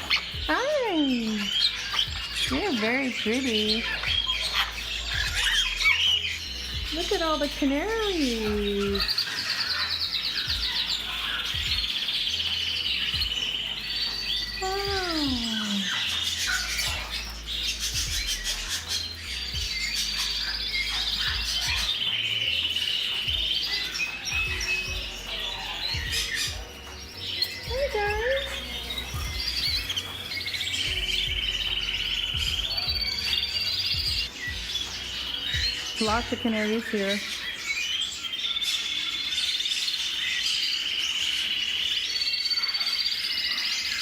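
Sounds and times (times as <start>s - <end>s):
canaries singing trilled songs: 0.0s - 44.0s.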